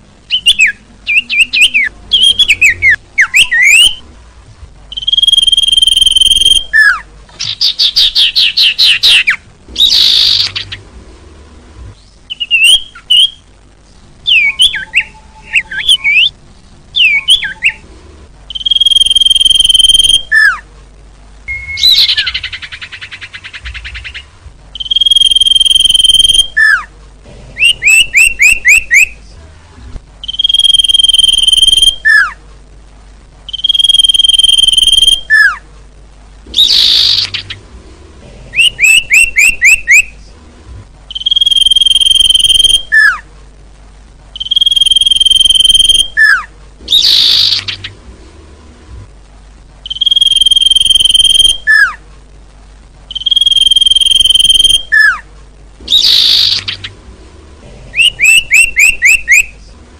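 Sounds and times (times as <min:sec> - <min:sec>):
falling chirps: 0:00.2 - 0:04.1, 0:04.9 - 0:11.0, 0:11.9 - 0:20.7, 0:21.4 - 0:26.9, 0:27.6 - 0:29.3, 0:30.2 - 0:32.4, 0:33.5 - 0:35.6, 0:36.5 - 0:37.8, 0:38.5 - 0:40.3, 0:41.1 - 0:43.3, 0:44.3 - 0:48.1, 0:49.8 - 0:52.0, 0:53.1 - 0:57.2, 0:57.9 - 0:59.7.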